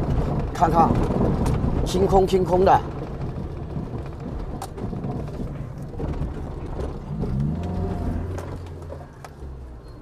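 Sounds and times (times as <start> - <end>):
suspension clunks: 0.0 - 10.0
engine revving: 6.7 - 9.6.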